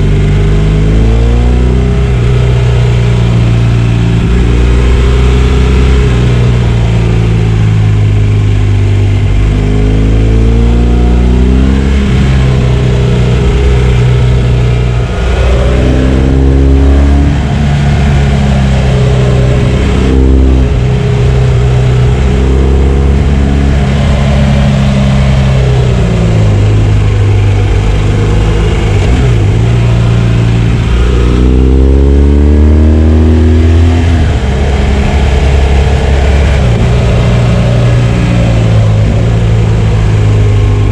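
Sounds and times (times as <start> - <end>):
motorcycle engine revving through gears: 0.0 - 40.9.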